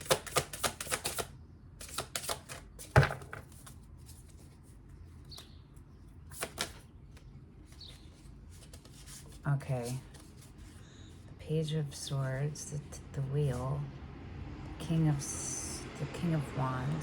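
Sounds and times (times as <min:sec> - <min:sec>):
cards being shuffled: 0:00.0 - 0:04.6, 0:06.3 - 0:10.8.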